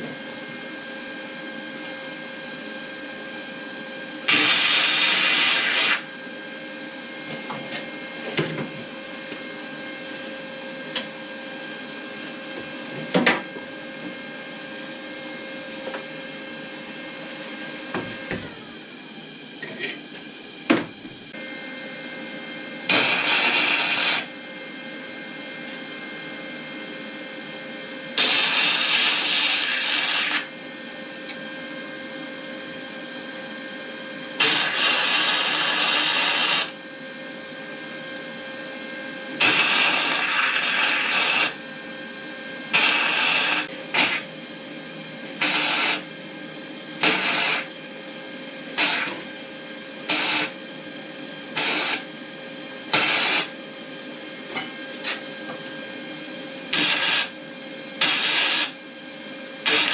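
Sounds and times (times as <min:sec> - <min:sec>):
handheld power tool running: 0:04.3 - 0:06.1, 0:22.9 - 0:24.3, 0:28.1 - 0:30.5, 0:34.4 - 0:36.8, 0:39.3 - 0:41.6, 0:42.7 - 0:44.3, 0:45.4 - 0:46.1, 0:47.0 - 0:47.7, 0:48.8 - 0:49.3, 0:50.0 - 0:50.6, 0:51.6 - 0:52.0, 0:52.9 - 0:53.6, 0:56.7 - 0:57.4, 0:58.0 - 0:58.8, 0:59.6 - 0:59.9.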